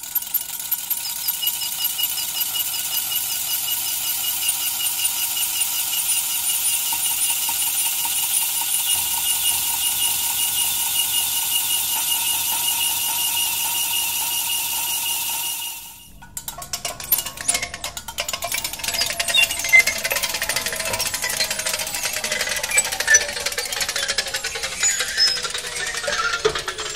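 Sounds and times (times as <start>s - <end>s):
rattling clicking metal squeak: 0.0s - 26.9s
high ringing metal squeal: 1.1s - 26.9s.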